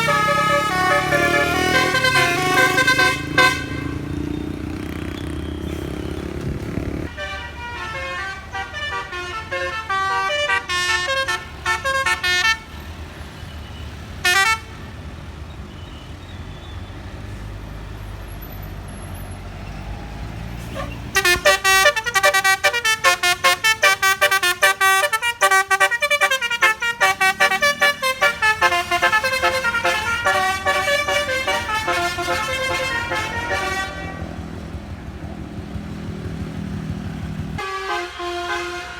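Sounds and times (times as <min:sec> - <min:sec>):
musical bus air horns: 0:00.0 - 0:04.1, 0:07.0 - 0:12.8, 0:14.2 - 0:14.9, 0:20.6 - 0:34.5, 0:37.6 - 0:38.9
bus engine rumbling: 0:00.0 - 0:38.9.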